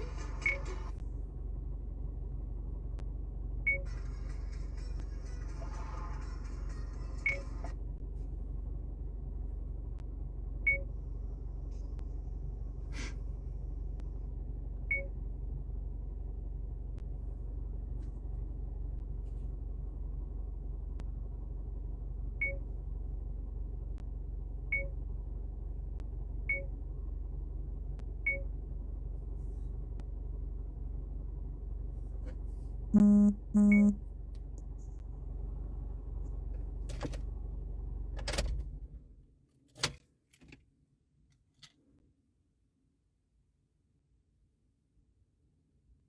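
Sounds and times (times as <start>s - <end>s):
steady low hum: 0.0s - 39.3s
short high electronic beeps: 33.0s - 34.0s.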